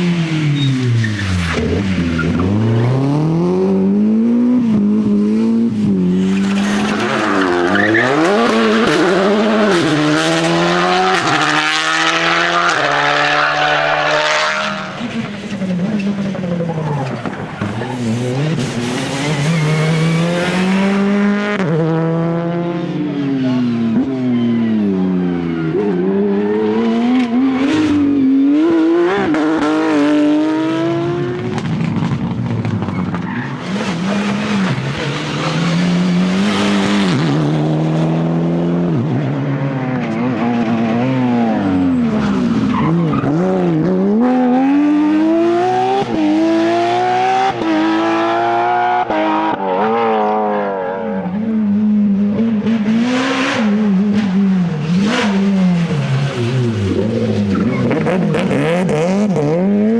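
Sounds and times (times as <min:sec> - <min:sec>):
rally car engines revving: 0:00.0 - 0:59.9.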